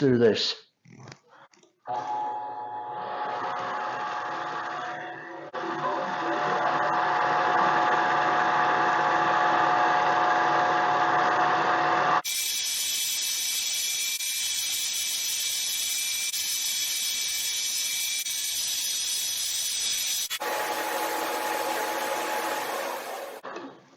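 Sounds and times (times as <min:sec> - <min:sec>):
lathe motor running: 0:20.4 - 0:23.4.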